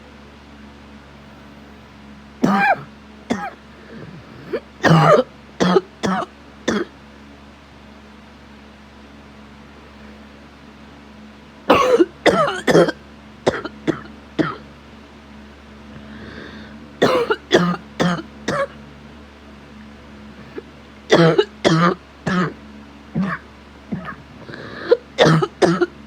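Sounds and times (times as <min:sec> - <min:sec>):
person coughing: 0:02.4 - 0:06.9, 0:11.7 - 0:14.6, 0:17.0 - 0:18.8, 0:20.5 - 0:22.6, 0:23.2 - 0:25.9.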